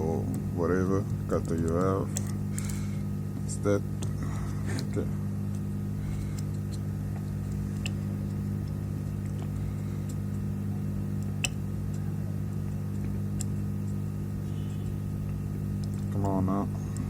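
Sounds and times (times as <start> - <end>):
low electrical hum: 0.0 - 17.0.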